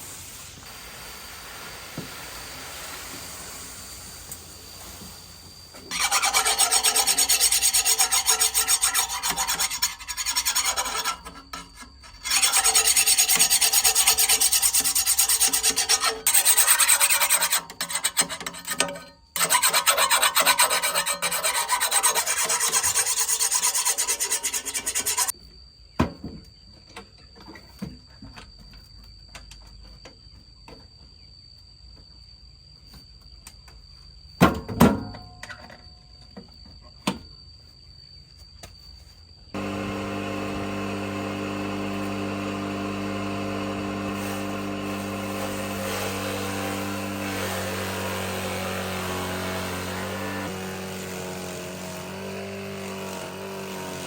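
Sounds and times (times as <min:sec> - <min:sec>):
plant shredder rasping: 0:05.9 - 0:18.1, 0:19.4 - 0:25.3, 0:39.6 - 0:54.0.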